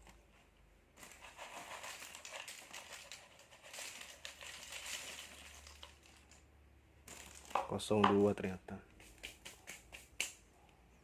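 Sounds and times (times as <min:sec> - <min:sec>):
plastic snack packets crinkling: 0:01.0 - 0:08.3.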